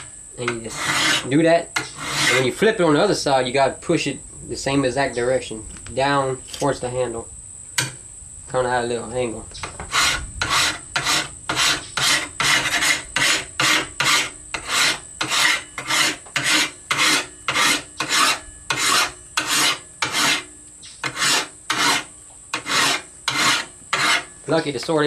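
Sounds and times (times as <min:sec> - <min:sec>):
file rasping on steel blade: 0:00.0 - 0:02.5, 0:09.7 - 0:24.3.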